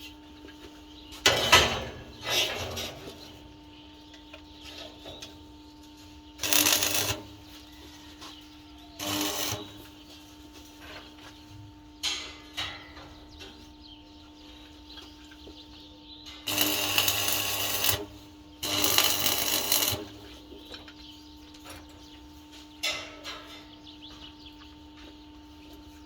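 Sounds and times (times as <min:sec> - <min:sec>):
steady hum: 0:00.0 - 0:23.2
metal-working noise bursts: 0:06.4 - 0:07.4, 0:09.0 - 0:09.9, 0:16.4 - 0:20.3.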